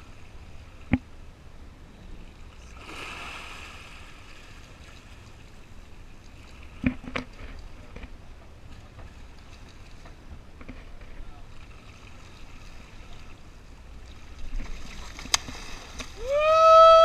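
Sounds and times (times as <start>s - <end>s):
water sloshing against boat hull: 4.2s - 16.2s.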